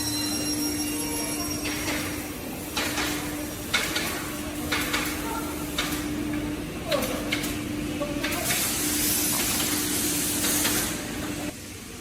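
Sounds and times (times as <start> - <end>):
machine humming: 0.0 - 12.0
loud hissing air: 8.4 - 11.2.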